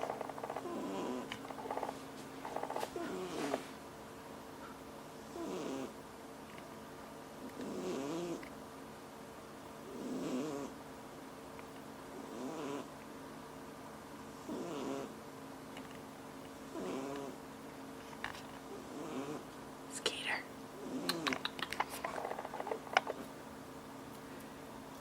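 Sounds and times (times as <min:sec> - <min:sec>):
pet snoring: 0:00.0 - 0:03.7, 0:05.3 - 0:06.0, 0:07.6 - 0:08.5, 0:09.9 - 0:10.7, 0:12.2 - 0:12.9, 0:14.4 - 0:15.1, 0:16.7 - 0:17.4, 0:18.7 - 0:19.4, 0:20.8 - 0:21.3, 0:22.0 - 0:23.2.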